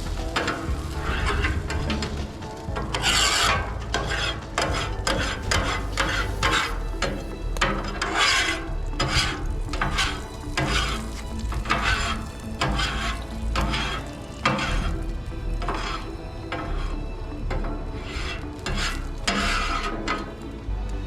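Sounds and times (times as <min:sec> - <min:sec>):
water sizzling on hot surface: 0:00.0 - 0:21.0.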